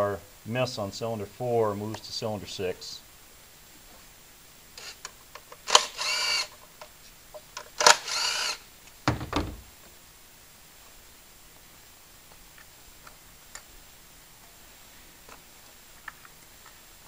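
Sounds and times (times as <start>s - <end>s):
dull thump: 9.0s - 9.8s.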